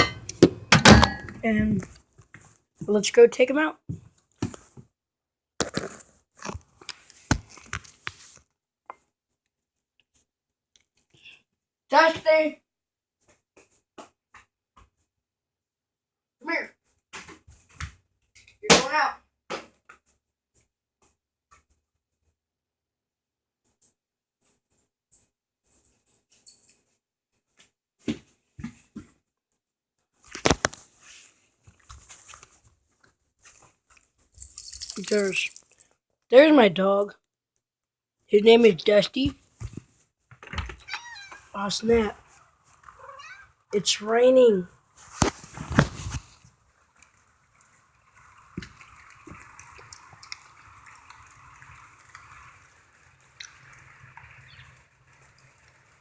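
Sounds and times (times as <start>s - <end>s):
knocks and clicks from handling: 0.0s - 1.4s.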